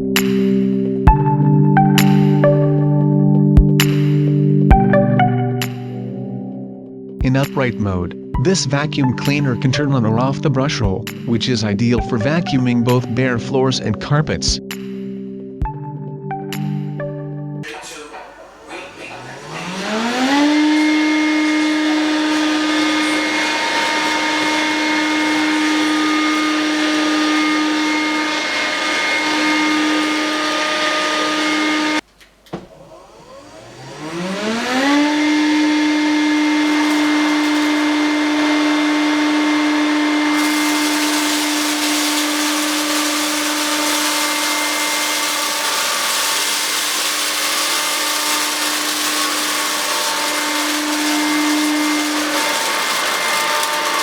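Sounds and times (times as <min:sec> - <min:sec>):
hissing rush: 0:17.6 - 0:32.0, 0:35.4 - 0:54.0
stick vacuum motor whine: 0:17.6 - 0:54.0.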